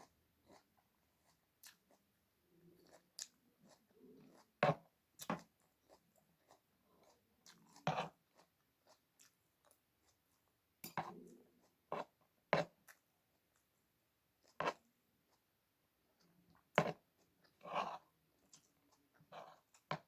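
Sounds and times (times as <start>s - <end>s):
person chewing crunchy food: 2.8s - 10.2s.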